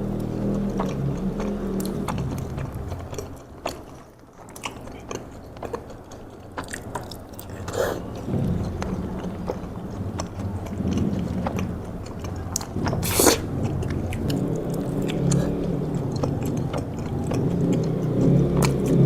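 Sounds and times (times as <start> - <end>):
close-up chewing: 0.0 - 19.0
steady low hum: 0.0 - 19.0
wet mouth clicks: 0.1 - 19.0.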